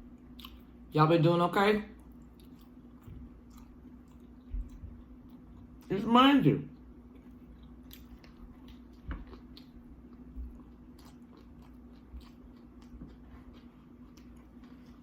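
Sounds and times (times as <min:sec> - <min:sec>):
close chewing and biting: 0:07.1 - 0:15.0.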